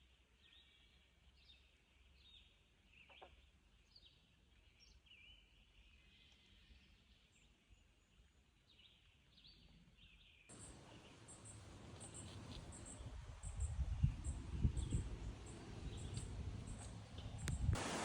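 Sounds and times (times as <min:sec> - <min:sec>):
faint songbird chirps: 0:00.0 - 0:17.8
steady hiss: 0:10.5 - 0:18.0
wind rumble on microphone: 0:11.8 - 0:18.0.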